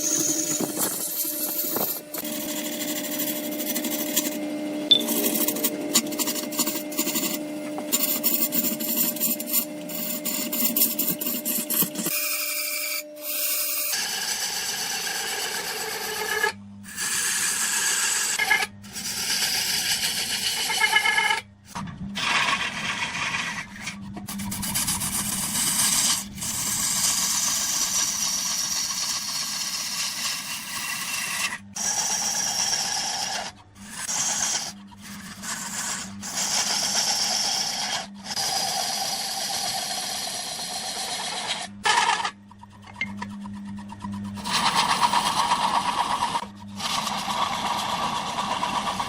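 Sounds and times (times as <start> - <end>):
lathe motor hum: 0.0 - 16.5, 26.0 - 49.0
wood turning on lathe scraping: 0.0 - 21.4, 22.2 - 49.0.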